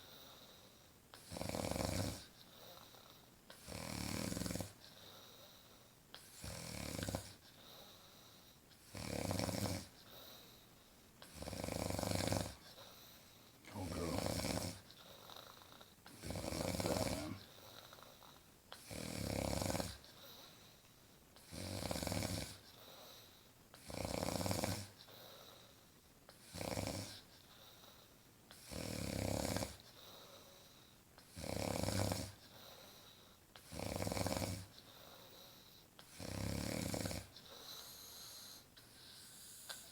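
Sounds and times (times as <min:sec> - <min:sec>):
quiet breathing: 0:00.0 - 0:23.8, 0:24.8 - 0:36.2, 0:36.8 - 0:39.9
heavy snoring: 0:01.2 - 0:03.0, 0:03.6 - 0:05.6, 0:06.4 - 0:08.0, 0:08.9 - 0:10.5, 0:11.2 - 0:20.4, 0:21.4 - 0:23.2, 0:23.8 - 0:25.6, 0:26.4 - 0:27.2, 0:28.6 - 0:29.8, 0:31.3 - 0:32.4, 0:33.6 - 0:34.7, 0:36.2 - 0:39.9.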